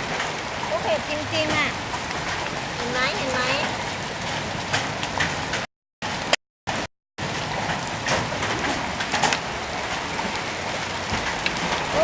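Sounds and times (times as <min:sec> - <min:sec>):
heavy rain hissing: 0:00.0 - 0:04.6.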